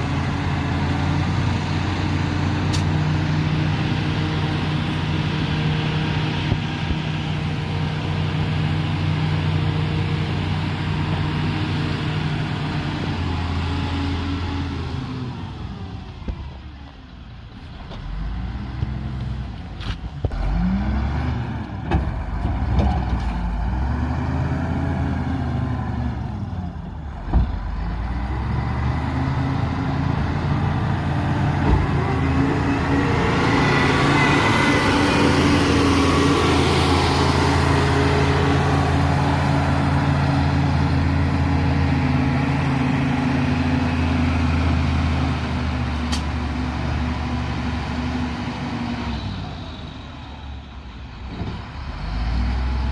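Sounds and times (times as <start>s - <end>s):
diesel engine of earthmover: 0.0s - 52.9s.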